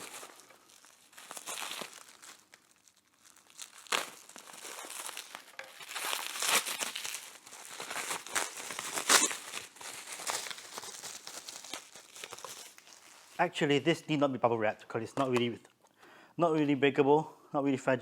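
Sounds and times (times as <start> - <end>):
sharp bubble wrap crackles: 0.0 - 14.2
bubble wrap crinkling: 0.0 - 15.9.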